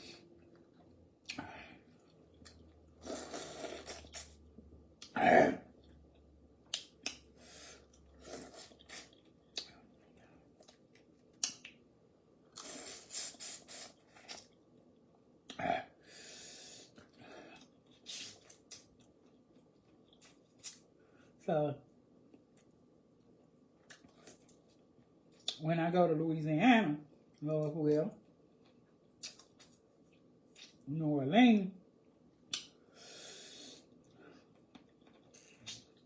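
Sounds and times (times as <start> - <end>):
breathing: 16.0 - 17.6, 32.8 - 34.5.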